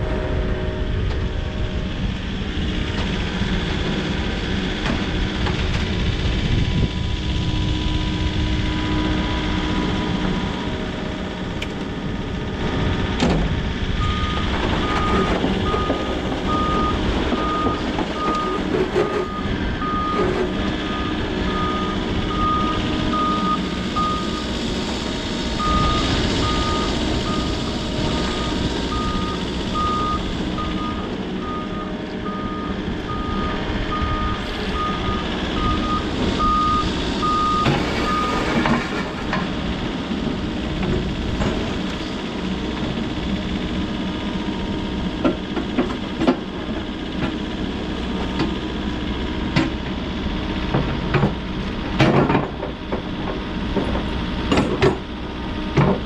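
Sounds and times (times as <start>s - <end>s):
diesel engine running: 0.0s - 56.0s
excavator travel alarm beeping: 14.0s - 24.5s, 25.6s - 38.6s.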